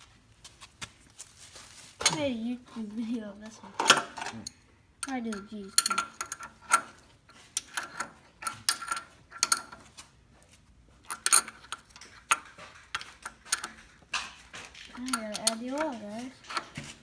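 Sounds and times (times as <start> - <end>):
metal tools clinking: 2.9 - 10.0, 11.0 - 17.0.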